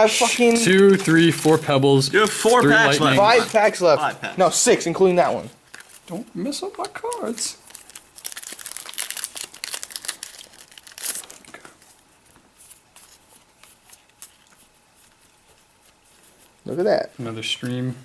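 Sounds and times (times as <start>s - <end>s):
foil wrapper tearing and crinkling: 5.6s - 11.8s.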